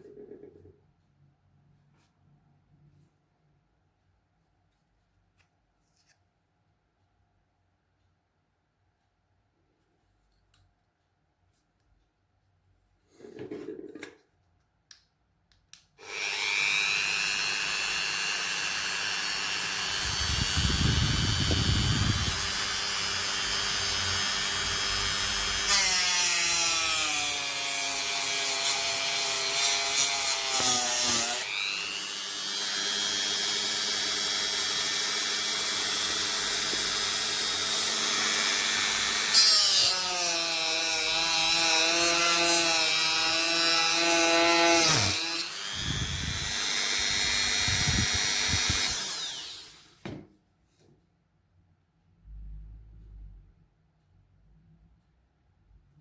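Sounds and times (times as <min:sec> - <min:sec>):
power tool motor running: 0:16.0 - 0:25.9, 0:28.2 - 0:42.6, 0:43.2 - 0:49.8.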